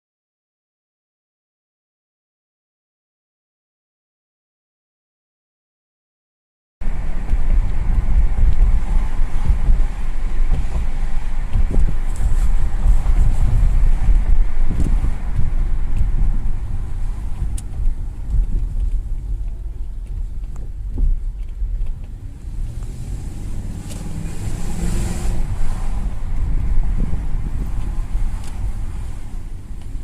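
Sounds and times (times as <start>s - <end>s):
car engine revving: 6.8s - 30.0s
low road rumble: 6.8s - 30.0s
sharp clicks over bumps: 7.0s - 22.9s, 25.4s - 30.0s.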